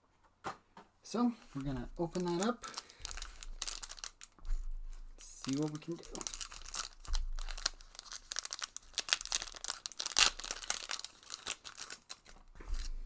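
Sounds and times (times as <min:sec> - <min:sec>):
wrapper crinkling as torn open: 0:01.5 - 0:04.4, 0:05.2 - 0:13.0.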